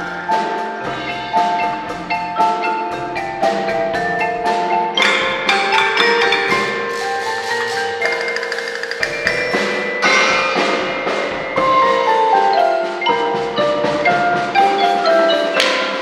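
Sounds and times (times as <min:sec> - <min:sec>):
mallet percussion ensemble: 0:00.0 - 0:16.0.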